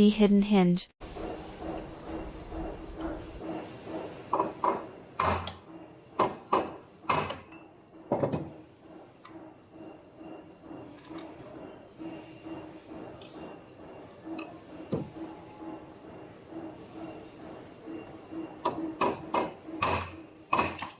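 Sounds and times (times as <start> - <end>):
sharp knocks of stamping metal: 4.3 - 8.6, 18.6 - 20.9.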